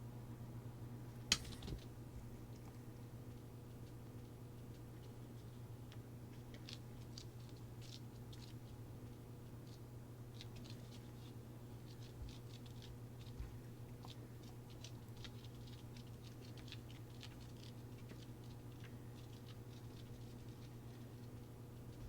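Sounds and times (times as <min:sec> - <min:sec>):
steady low hum: 0:00.0 - 0:22.0
light clicks and crackles: 0:01.3 - 0:22.0.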